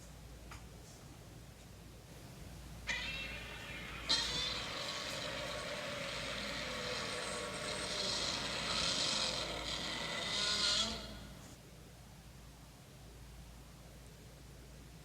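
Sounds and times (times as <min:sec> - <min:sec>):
monster roar: 0:02.9 - 0:11.5.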